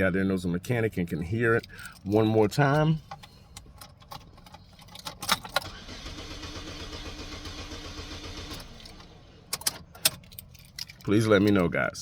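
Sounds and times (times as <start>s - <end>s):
car engine cranking: 3.6s - 11.6s
key clicking in ignition: 8.4s - 11.7s.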